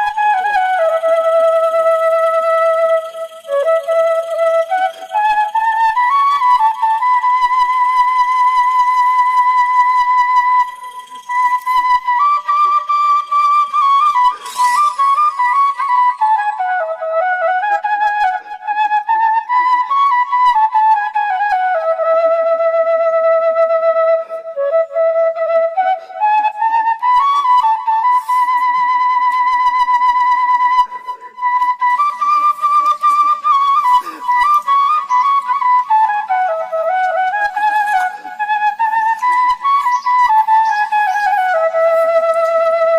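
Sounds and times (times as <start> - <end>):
slow melody with low accompaniment: 0.0 - 30.3.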